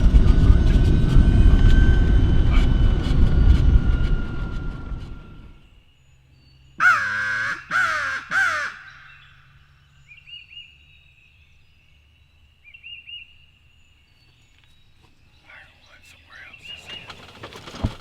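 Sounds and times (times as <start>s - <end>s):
crow cawing: 6.8s - 9.6s
faint bird chirps: 8.7s - 17.4s.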